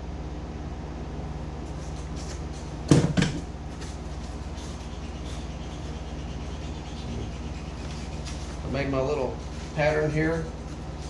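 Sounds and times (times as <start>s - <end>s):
air conditioner humming: 0.0s - 11.0s
sharp knocks: 2.9s - 3.9s.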